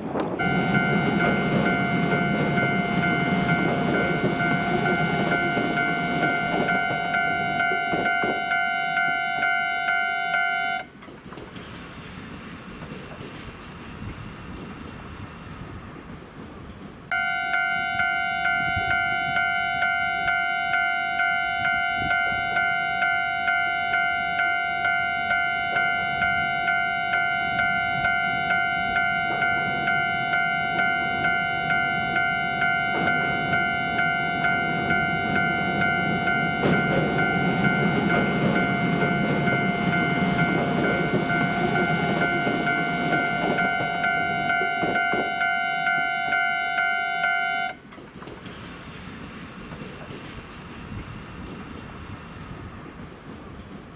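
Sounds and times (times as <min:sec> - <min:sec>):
train rumbling: 0:00.0 - 0:53.9
level crossing alarm clanging: 0:00.2 - 0:11.0, 0:17.1 - 0:47.8.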